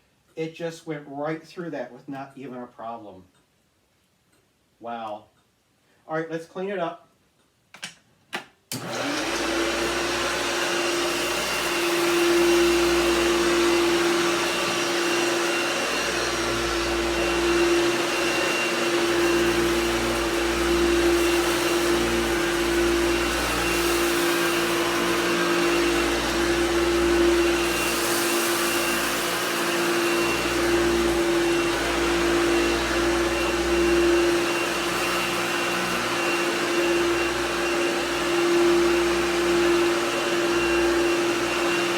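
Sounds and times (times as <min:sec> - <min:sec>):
vacuum cleaner humming: 0:08.7 - 0:41.9.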